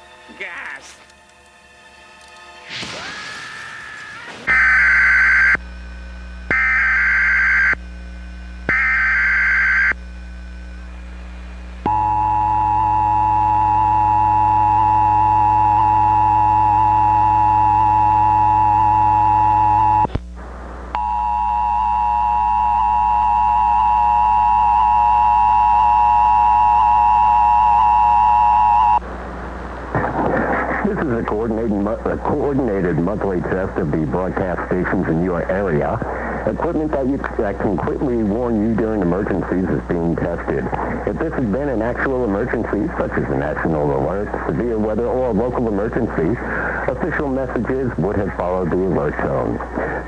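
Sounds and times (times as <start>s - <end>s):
low hum: 4.4s - 50.0s
screechy digital data bursts: 8.7s - 10.0s
two-tone attention signal: 21.0s - 29.0s.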